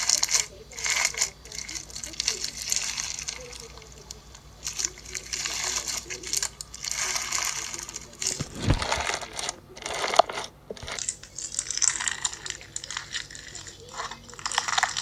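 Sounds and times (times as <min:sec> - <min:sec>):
slime beads crackling: 0:00.0 - 0:15.0.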